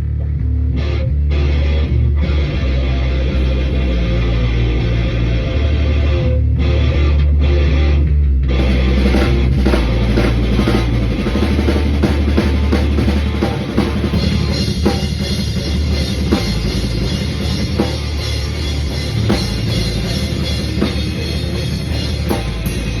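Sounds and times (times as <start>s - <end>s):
distorted guitar: 0.0s - 23.0s
rock band playing: 0.7s - 7.9s, 8.5s - 23.0s
drum kit playing loudly: 3.4s - 5.1s, 8.6s - 23.0s.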